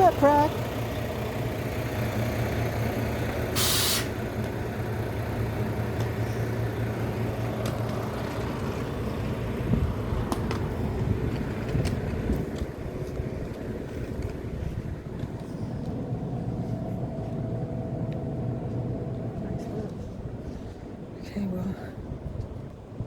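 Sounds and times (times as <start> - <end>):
vehicle engine idling: 0.0 - 23.0
hiss of air: 3.5 - 4.2.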